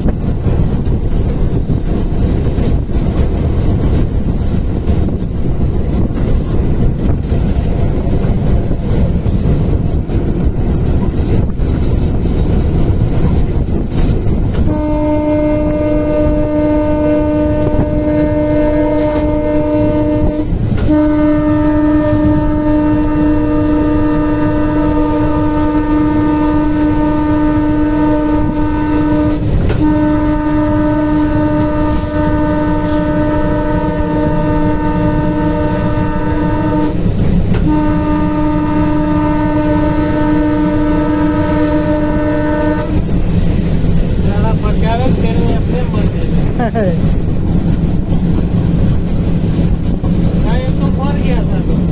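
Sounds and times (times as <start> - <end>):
moving train rumble: 0.0 - 51.9
locomotive horn blasts: 14.1 - 43.6.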